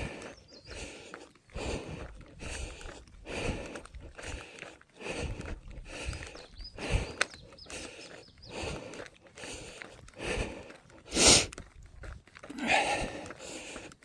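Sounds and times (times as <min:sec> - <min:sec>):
person breathing hard: 0:00.0 - 0:11.6, 0:12.5 - 0:14.0
footsteps on a trail: 0:00.0 - 0:14.0.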